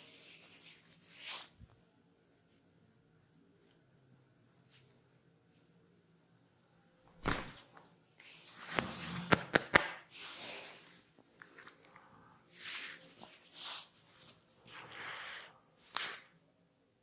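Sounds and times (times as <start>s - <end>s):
hands rubbing hair and scalp: 12.6s - 15.2s.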